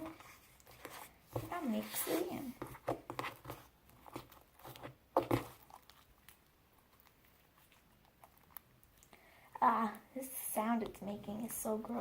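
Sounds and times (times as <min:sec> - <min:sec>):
slime squelching and clicking: 0:05.3 - 0:09.2.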